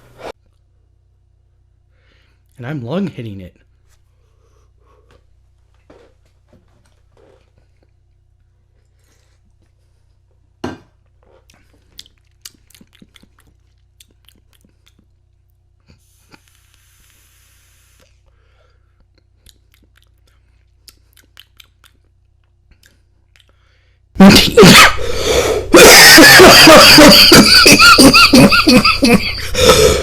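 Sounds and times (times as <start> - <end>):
person coughing: 24.2 - 25.0, 25.7 - 30.0.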